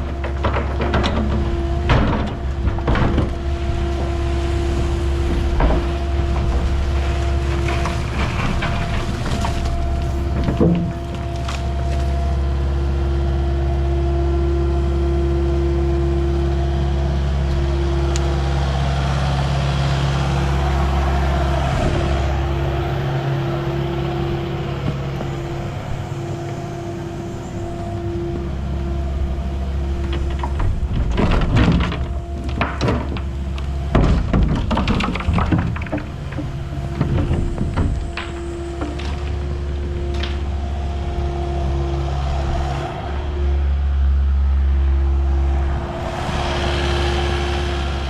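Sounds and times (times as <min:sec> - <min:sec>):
heavy engine running: 0:00.0 - 0:48.0
sharp knocks and clatter: 0:30.0 - 0:40.4.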